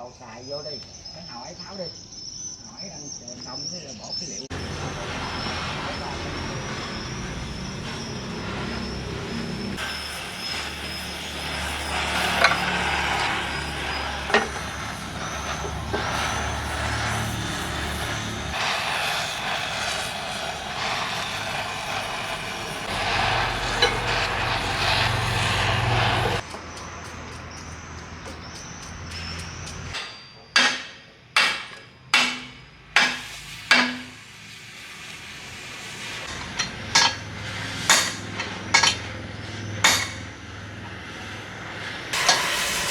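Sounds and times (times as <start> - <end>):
steady hissing: 0.2 - 30.0, 40.4 - 42.9
low hum: 4.5 - 26.4.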